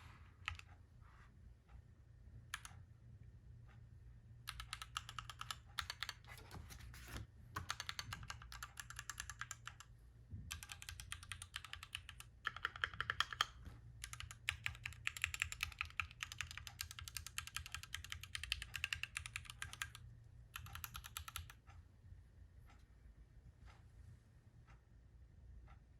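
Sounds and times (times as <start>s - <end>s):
mechanical keyboard typing: 0.4s - 0.7s, 2.5s - 2.8s, 4.4s - 9.9s, 10.5s - 21.6s.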